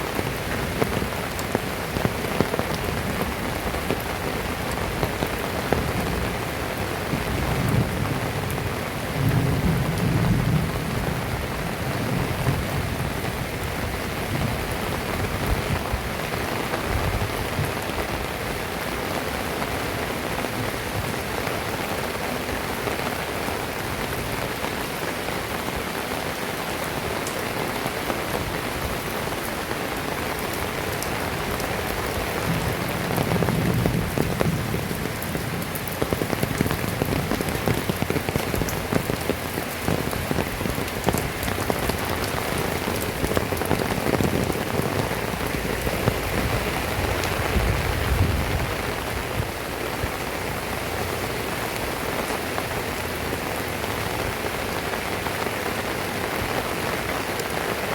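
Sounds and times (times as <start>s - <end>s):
heavy rain falling: 0.0s - 57.9s
low thunder rumbles: 4.4s - 16.2s, 31.2s - 51.3s.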